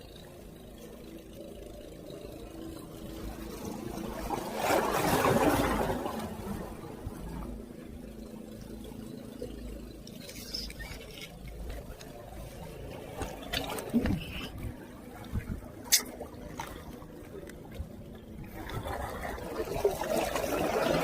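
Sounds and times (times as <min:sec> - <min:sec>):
steady low hum: 0:00.0 - 0:21.0
water splashing: 0:03.2 - 0:07.6.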